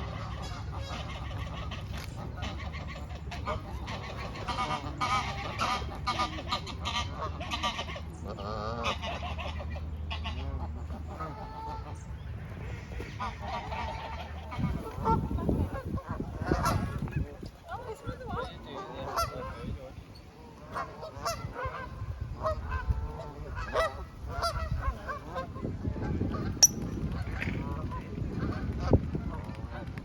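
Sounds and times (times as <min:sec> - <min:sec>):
geese honking: 0:00.0 - 0:17.0, 0:18.3 - 0:19.8, 0:20.6 - 0:25.6.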